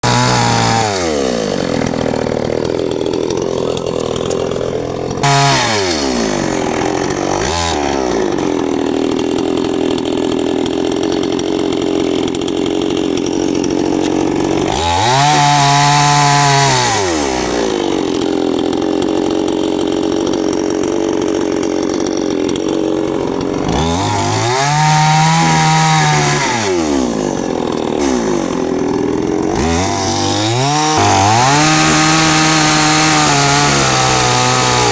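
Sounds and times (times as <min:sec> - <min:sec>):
chainsaw cutting wood: 0:00.0 - 0:34.9.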